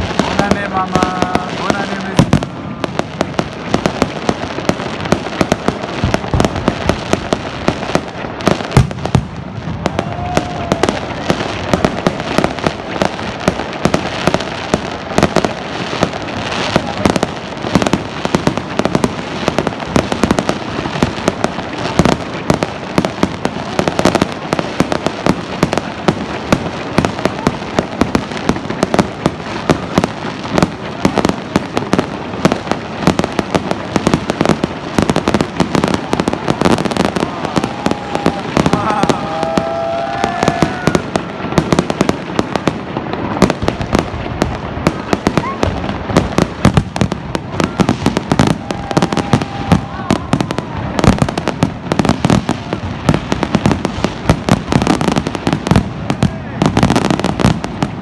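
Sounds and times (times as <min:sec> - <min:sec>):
fireworks bursting and crackling: 0:00.0 - 0:58.0.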